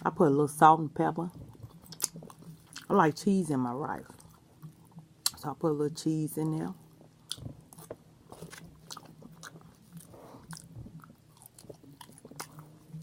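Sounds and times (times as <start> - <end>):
person chewing food: 1.4 - 2.9, 4.0 - 5.4, 6.8 - 13.0.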